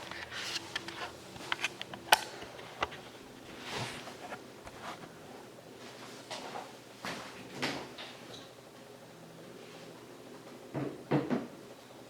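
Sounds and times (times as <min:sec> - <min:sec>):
faint room noise: 0:00.0 - 0:12.0
soft rustling: 0:02.5 - 0:07.4.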